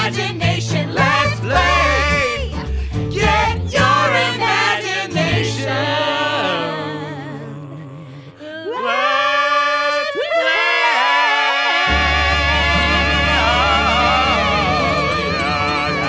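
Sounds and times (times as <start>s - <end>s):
group singing: 0.0s - 16.0s
band accompaniment: 11.9s - 16.0s.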